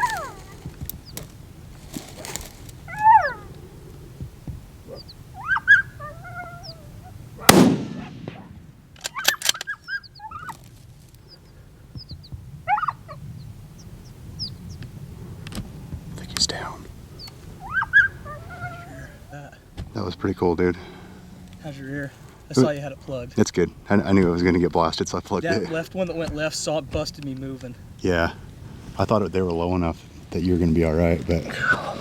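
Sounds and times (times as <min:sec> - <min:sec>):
coyotes barking and yipping: 0:00.0 - 0:15.4, 0:17.0 - 0:22.6
gunshot: 0:07.4 - 0:08.8.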